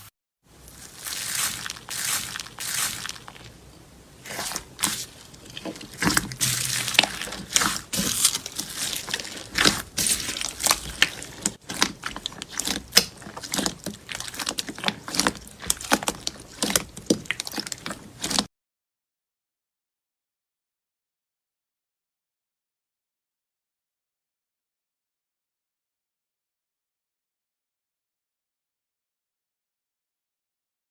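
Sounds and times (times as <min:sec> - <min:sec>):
slime squishing by hand: 0:00.6 - 0:18.5.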